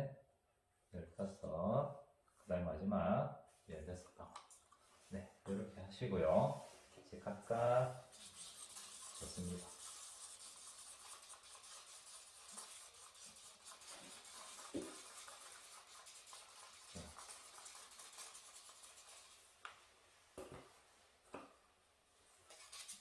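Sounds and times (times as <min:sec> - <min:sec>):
paint stirring in cup: 0:07.5 - 0:19.7, 0:22.5 - 0:23.0.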